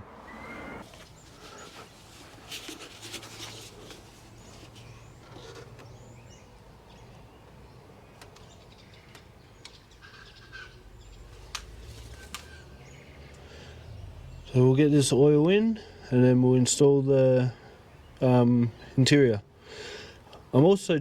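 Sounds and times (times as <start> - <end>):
faint bird calls: 0.0 - 14.5.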